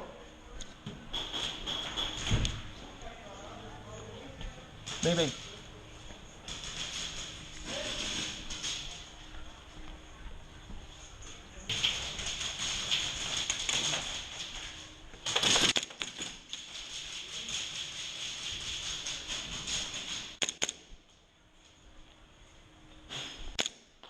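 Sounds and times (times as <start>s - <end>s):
sharp clicks: 20.4s - 20.8s.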